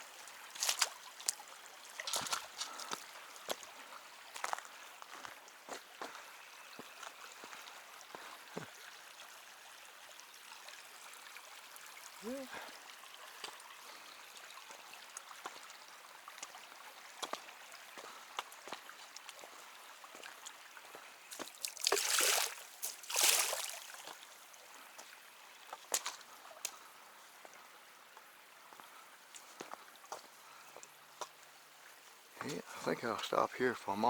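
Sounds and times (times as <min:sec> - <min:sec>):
stream trickling over rock: 0:00.0 - 0:34.0
splashes in water: 0:00.6 - 0:01.4, 0:02.0 - 0:03.6, 0:21.3 - 0:24.2.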